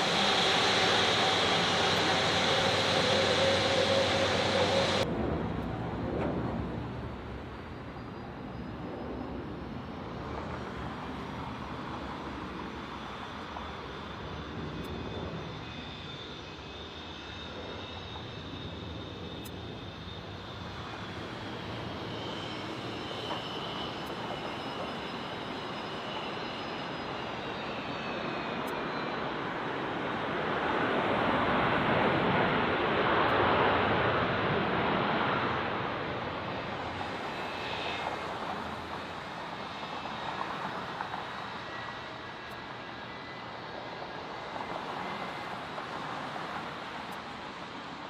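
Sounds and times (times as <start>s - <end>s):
jet engines running: 0.0s - 48.0s.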